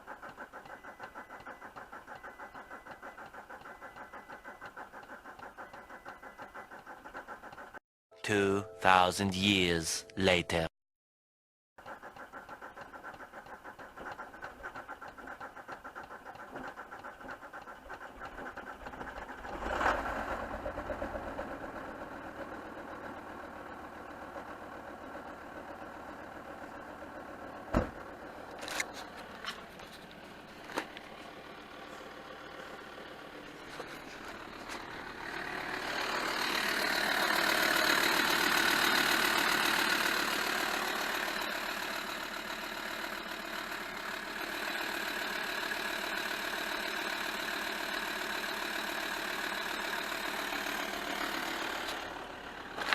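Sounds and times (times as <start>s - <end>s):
diesel engine running: 0.0s - 10.6s, 11.8s - 52.9s
sharp engine knocks: 27.7s - 28.1s.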